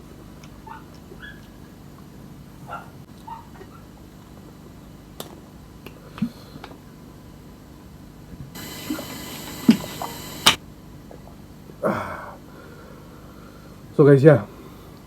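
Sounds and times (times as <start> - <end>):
hiss ending in sharp click: 8.6 - 10.6.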